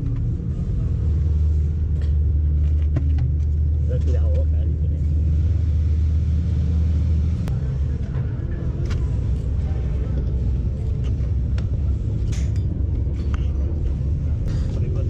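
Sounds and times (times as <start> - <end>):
low mechanical rumble: 0.0 - 15.0.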